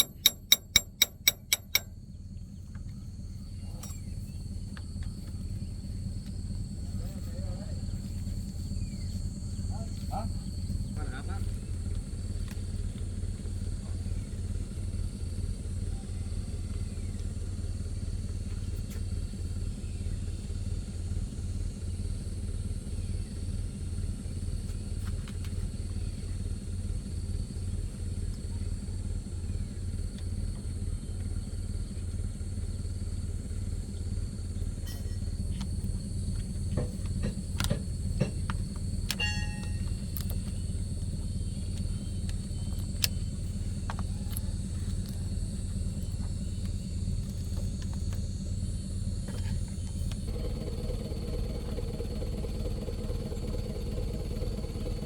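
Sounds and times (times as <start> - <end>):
sharp clicks and taps: 0.0 - 1.9
motor humming: 35.5 - 55.0.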